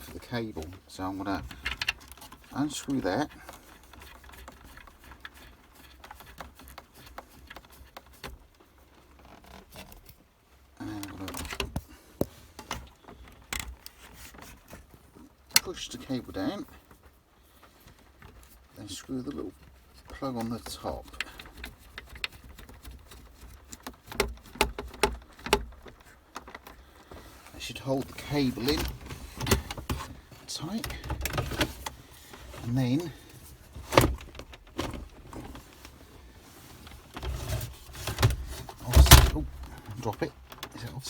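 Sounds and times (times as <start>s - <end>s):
plastic clicks and scratches: 0.0s - 40.9s
plastic clicks and knocks: 20.7s - 27.3s.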